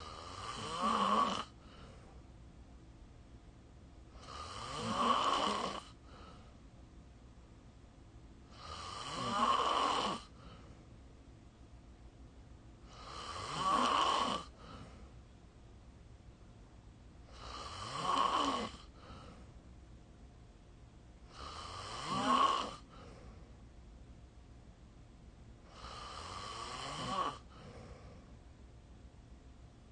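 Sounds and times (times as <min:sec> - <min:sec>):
person snoring: 0:00.0 - 0:01.8, 0:04.2 - 0:06.3, 0:08.5 - 0:10.5, 0:12.9 - 0:14.8, 0:17.3 - 0:19.3, 0:21.3 - 0:23.0, 0:25.7 - 0:27.8
faint breath out: 0:01.6 - 0:02.2, 0:06.0 - 0:06.6, 0:10.3 - 0:10.9, 0:14.5 - 0:15.2, 0:18.9 - 0:19.6, 0:22.8 - 0:23.6, 0:27.5 - 0:28.4.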